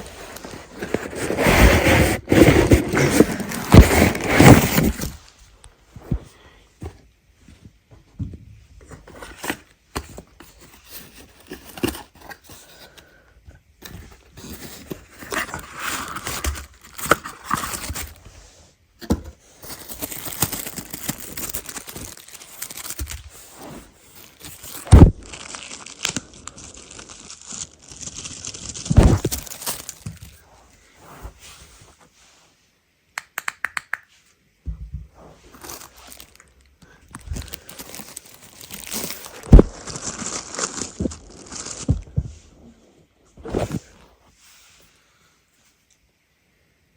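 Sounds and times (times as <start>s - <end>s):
plastic and paper wrapping crinkling: 0.0s - 5.3s, 14.4s - 18.2s, 19.5s - 30.4s, 35.5s - 42.5s.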